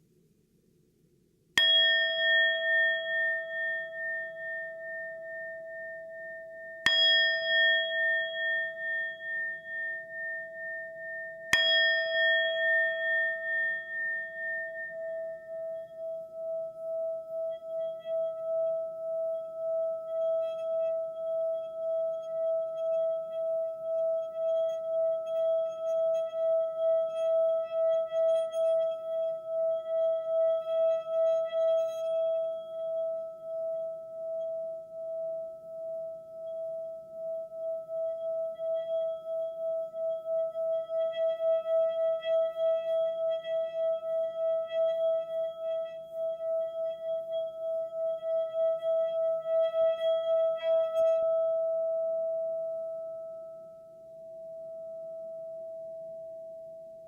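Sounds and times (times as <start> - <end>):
singing bowl struck: 1.6 - 32.6
singing bowl pulsing tone: 1.6 - 57.0.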